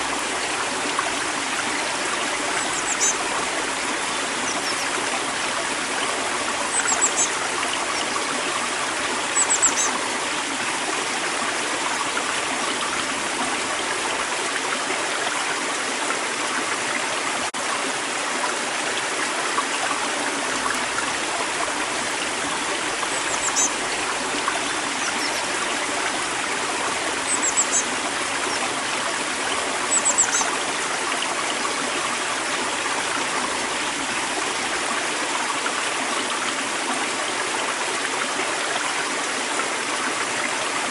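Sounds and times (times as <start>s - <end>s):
river flowing over stones: 0.0s - 40.9s
songbird chirping: 23.0s - 23.7s, 27.3s - 27.9s, 29.9s - 30.5s.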